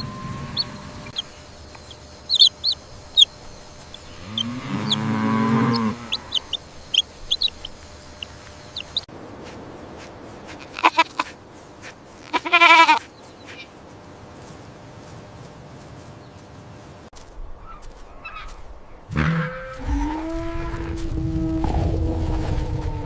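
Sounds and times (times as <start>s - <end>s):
farm animal bleating: 0.0s - 7.8s, 10.6s - 11.4s, 12.2s - 13.7s
animal long steady call: 0.0s - 9.1s, 10.5s - 11.4s, 19.1s - 23.0s.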